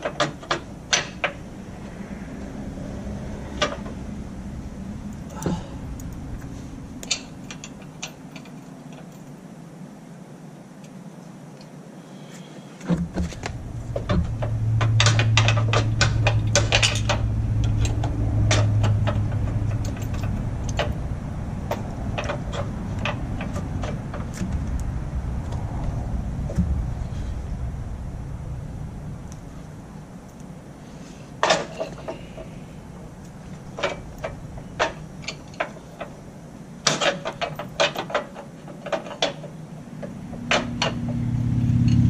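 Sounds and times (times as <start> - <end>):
low steady rumble: 0.0 - 10.5, 13.0 - 42.0
hand tools clinking on metal: 14.8 - 21.0.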